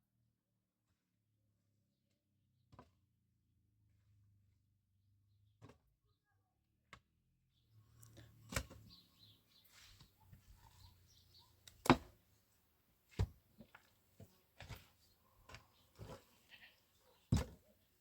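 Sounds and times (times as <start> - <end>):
sharp knocks and thuds: 13.1 - 14.9, 17.3 - 17.6.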